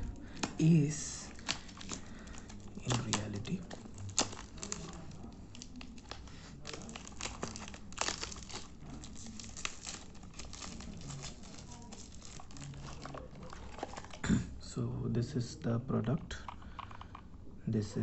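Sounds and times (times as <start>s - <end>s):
packaging crinkling and tearing: 0.0s - 14.3s.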